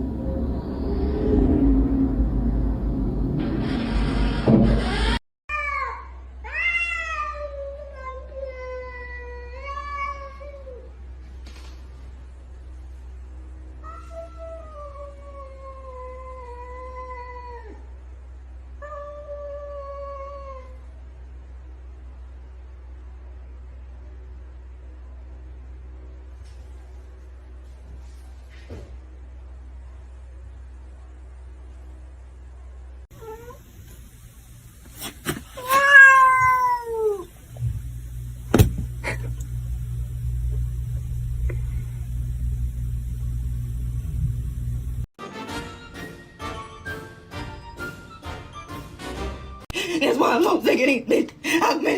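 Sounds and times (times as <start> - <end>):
low hum: 0.0 - 5.2, 37.1 - 45.1
cat yowling: 5.5 - 10.8, 33.2 - 33.6, 35.6 - 37.4
cat meowing: 35.6 - 37.4.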